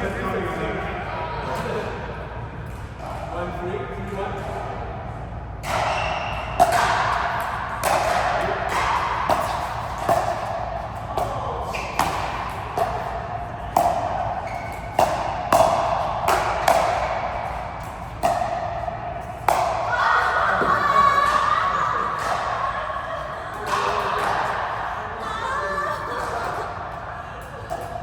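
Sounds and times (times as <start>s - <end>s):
racket hitting ball: 5.6s - 24.9s.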